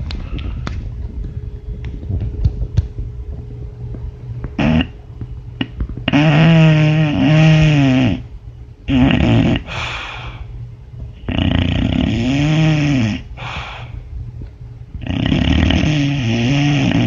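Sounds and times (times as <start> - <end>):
dog snoring: 4.6 - 4.9, 6.0 - 8.3, 8.9 - 10.4, 11.2 - 13.8, 15.0 - 17.0.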